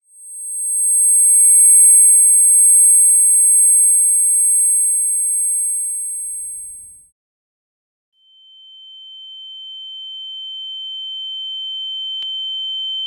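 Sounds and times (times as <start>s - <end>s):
high-pitched ringing whine: 0.1s - 7.0s.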